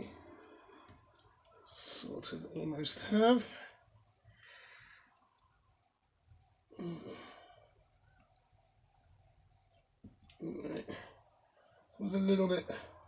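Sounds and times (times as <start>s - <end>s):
person breathing: 3.5s - 5.2s, 6.7s - 7.9s
person sighing: 6.7s - 7.6s.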